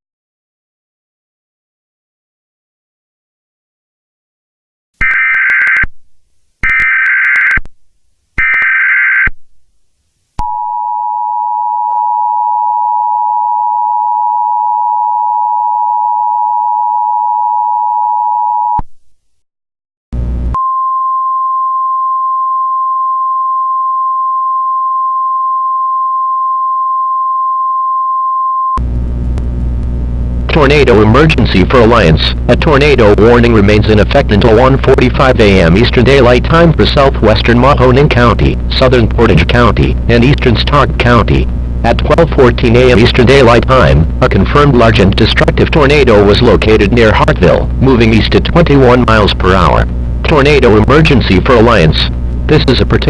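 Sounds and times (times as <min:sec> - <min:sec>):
warbling digital data screech: 0:06.6 - 0:07.6.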